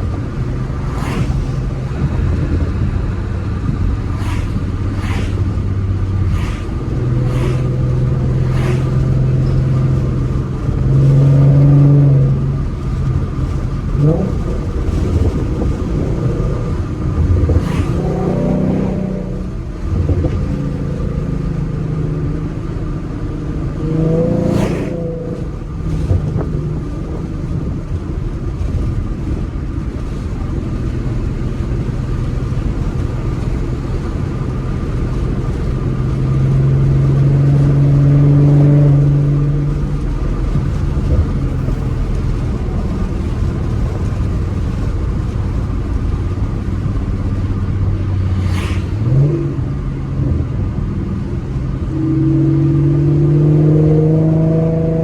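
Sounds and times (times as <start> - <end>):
car engine running on road: 0.0 - 55.0.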